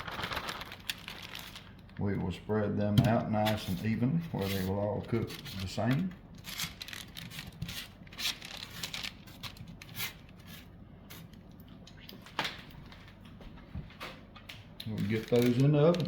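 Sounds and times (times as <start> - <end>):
parchment paper crinkling: 0.0 - 2.4, 3.3 - 12.2, 14.6 - 16.0.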